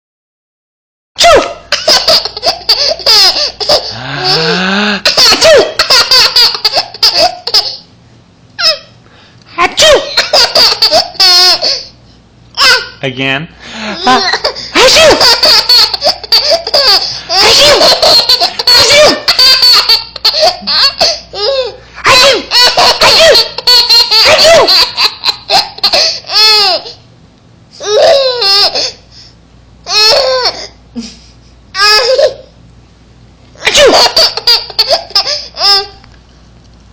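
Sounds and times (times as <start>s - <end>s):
child laughing: 1.2s - 7.9s, 8.6s - 9.0s, 9.8s - 11.9s, 12.6s - 13.0s, 13.7s - 27.0s, 27.8s - 29.0s, 29.9s - 32.5s, 33.6s - 36.0s
deeper voice: 4.0s - 5.1s.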